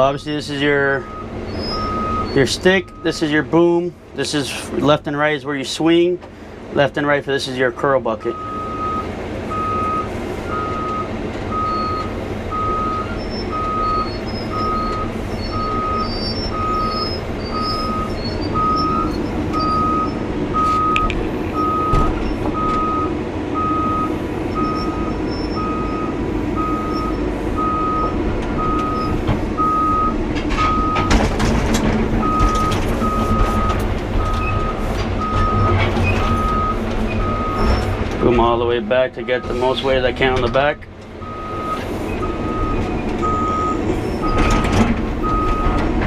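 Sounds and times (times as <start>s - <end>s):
excavator travel alarm beeping: 0.0s - 3.8s, 8.2s - 31.5s, 32.1s - 46.0s
diesel engine running: 0.0s - 46.0s.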